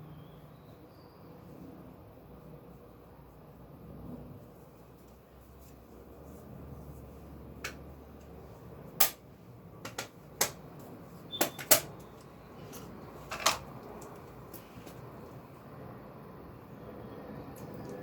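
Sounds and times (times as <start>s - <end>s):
faint background hum: 0.0s - 18.0s
sharp clicks and knocks: 9.8s - 15.0s.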